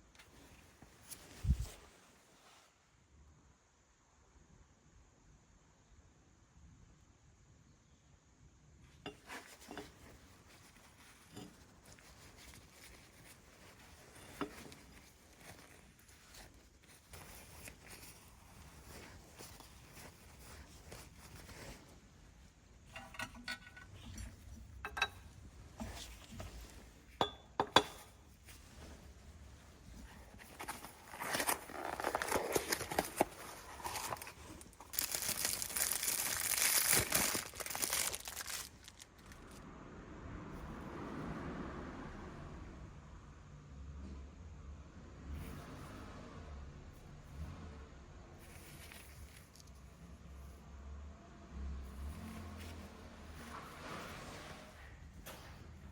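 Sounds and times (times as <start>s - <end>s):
faint handling noises: 0.0s - 3.1s, 8.8s - 39.7s, 48.3s - 55.9s.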